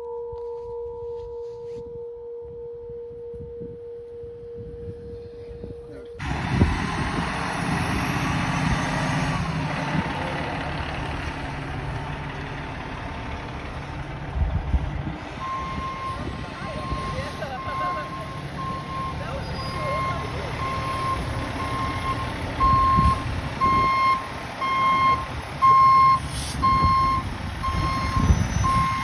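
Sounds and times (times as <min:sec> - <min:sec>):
steady engine rumble: 0:05.0 - 0:29.0
indistinct voices: 0:05.9 - 0:24.2
locomotive bell ringing: 0:15.4 - 0:26.2.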